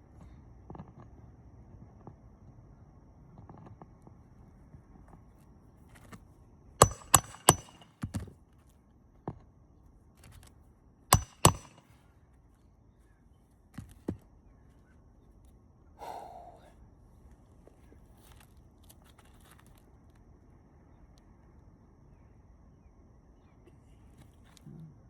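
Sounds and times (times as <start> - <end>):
hammer striking roofing nails: 6.8 - 8.2, 11.1 - 11.8.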